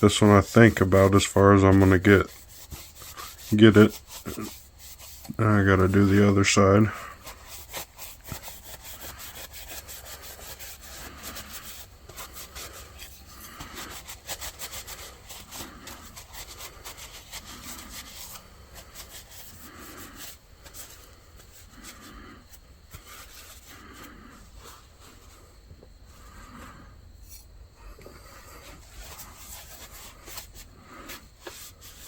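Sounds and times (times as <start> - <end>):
rubbing rust off metal blades: 0.0 - 22.2.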